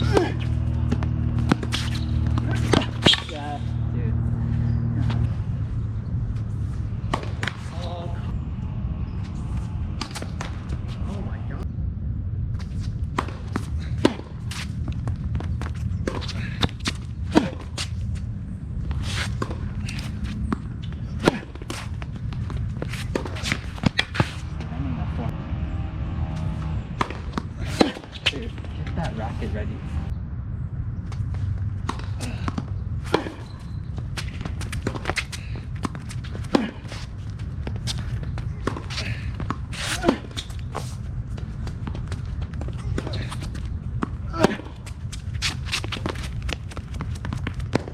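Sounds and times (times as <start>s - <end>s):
low rumble: 0.0s - 36.5s
footsteps on tennis court: 0.1s - 3.8s, 9.1s - 11.2s, 12.6s - 24.7s, 31.1s - 47.9s
footsteps and shoe scuffs: 0.4s - 3.4s, 44.8s - 47.9s.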